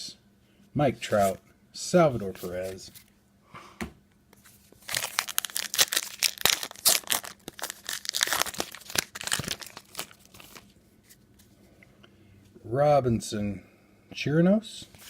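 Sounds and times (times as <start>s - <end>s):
card pack wrapper tearing: 4.8s - 10.7s.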